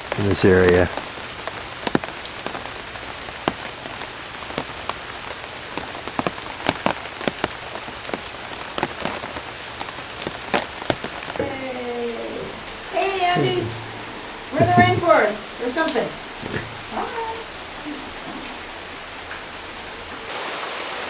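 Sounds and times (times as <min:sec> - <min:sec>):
steady rain hiss: 0:00.0 - 0:21.0
sharp drips striking: 0:12.6 - 0:17.4.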